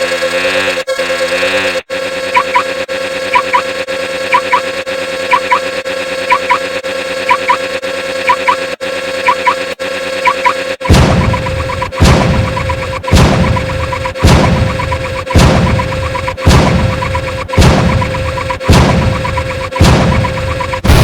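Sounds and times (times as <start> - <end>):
steady buzzing tone: 0.0 - 21.0
warbling electronic sound: 1.4 - 21.0
short rising chirps: 2.2 - 3.7, 4.3 - 10.7.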